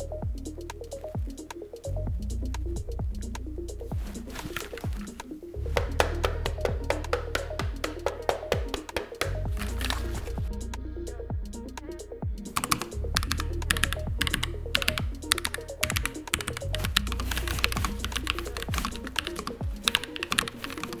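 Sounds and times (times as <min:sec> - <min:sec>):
background music with steady beat: 0:00.0 - 0:21.0
mechanical keyboard typing: 0:05.8 - 0:10.2, 0:12.5 - 0:21.0.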